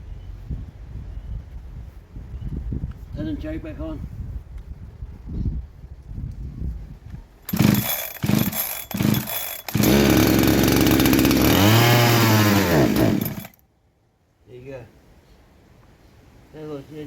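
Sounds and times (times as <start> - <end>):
chainsaw engine revving: 7.5 - 13.6
chainsaw engine running: 7.5 - 13.6
chainsaw pull-start: 7.5 - 13.6.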